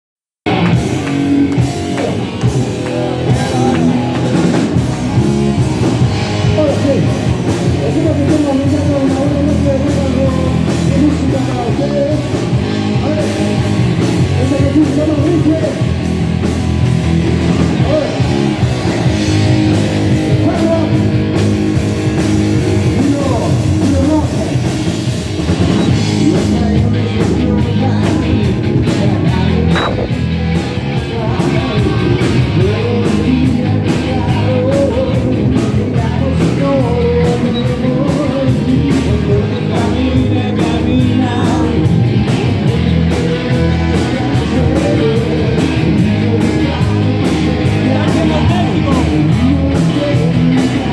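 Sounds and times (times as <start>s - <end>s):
rock band with guitars and drums: 0.4s - 50.9s
person singing: 0.5s - 15.9s, 25.7s - 50.9s.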